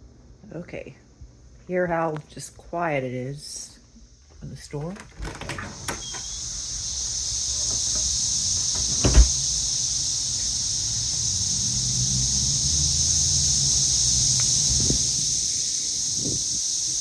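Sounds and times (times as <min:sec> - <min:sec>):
cicadas droning: 0:00.0 - 0:17.0
sharp thump: 0:08.7 - 0:09.7.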